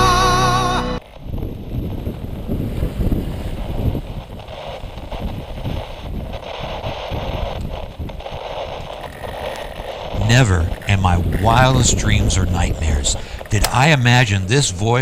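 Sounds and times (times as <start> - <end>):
background music: 0.0 - 1.0
wind buffeting microphone: 1.0 - 15.0
steady rush of noise: 3.6 - 15.0.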